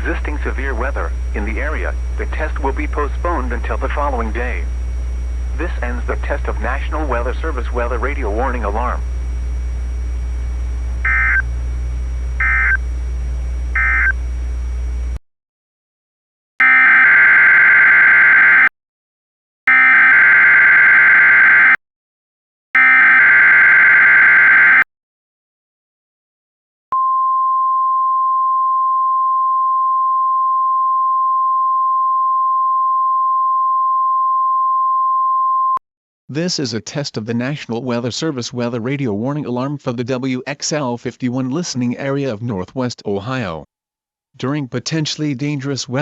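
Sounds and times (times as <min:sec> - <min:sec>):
receiver low hum: 0:00.0 - 0:15.2
steady warning alarm tone: 0:11.0 - 0:11.6, 0:12.3 - 0:12.9, 0:13.7 - 0:14.2, 0:16.6 - 0:18.7, 0:19.7 - 0:21.8, 0:22.8 - 0:24.8.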